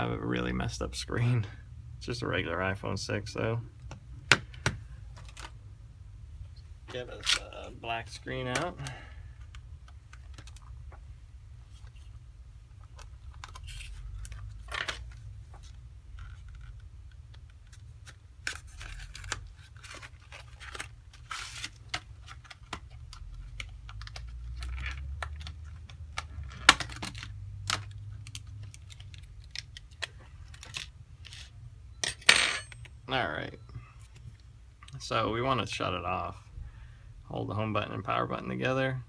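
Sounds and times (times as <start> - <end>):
steady low hum: 0.0 - 21.3.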